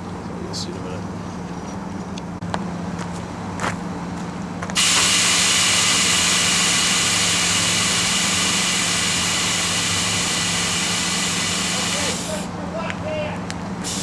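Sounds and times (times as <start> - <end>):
vehicle engine humming: 0.0 - 14.0
compressed air hissing: 4.8 - 12.6, 13.8 - 14.0.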